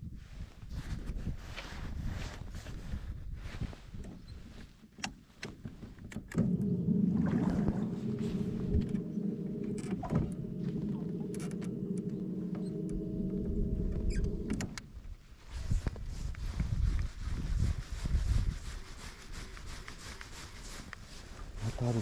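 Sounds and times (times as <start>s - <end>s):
motor humming: 6.4s - 14.9s.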